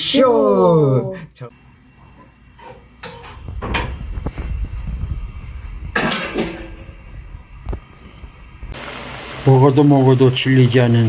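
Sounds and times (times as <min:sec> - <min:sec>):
kitchen clatter: 0:02.6 - 0:04.0, 0:05.9 - 0:07.1
low rumble: 0:03.4 - 0:06.0.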